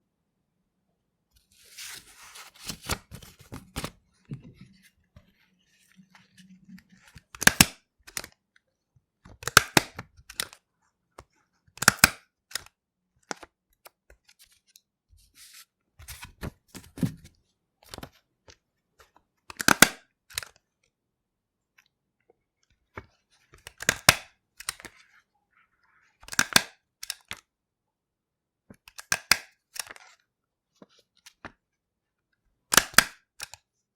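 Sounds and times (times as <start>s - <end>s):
paper rustling: 1.4s - 7.4s
stapler clicking through paper: 7.4s - 8.3s, 9.3s - 10.6s, 11.8s - 12.7s, 19.5s - 20.5s, 23.7s - 24.9s, 28.8s - 30.0s, 32.7s - 33.6s.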